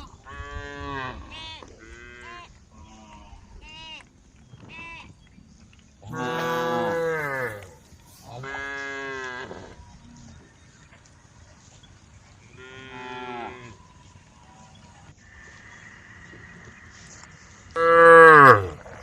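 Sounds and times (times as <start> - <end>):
cows mooing: 6.1 - 7.8, 17.8 - 19.0.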